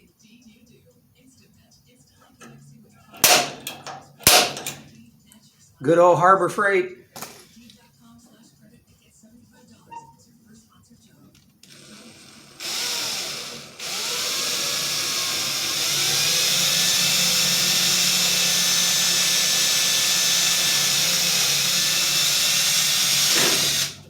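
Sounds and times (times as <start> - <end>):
electric drill boring through metal: 3.2 - 4.8, 11.6 - 24.0.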